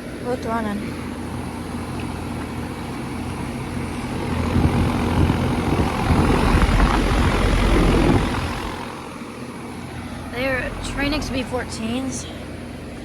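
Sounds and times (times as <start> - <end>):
compressor humming: 0.0 - 13.0
fans rushing: 3.1 - 12.5.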